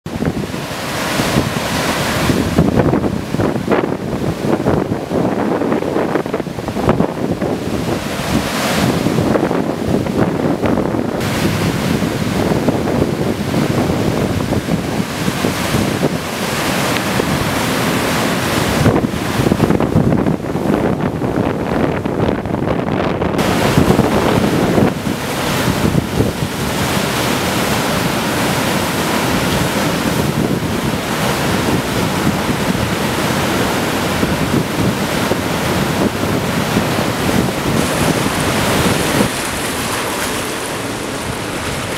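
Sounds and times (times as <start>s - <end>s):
wind buffeting microphone: 0.0s - 41.9s
floodwater rushing: 0.1s - 41.9s.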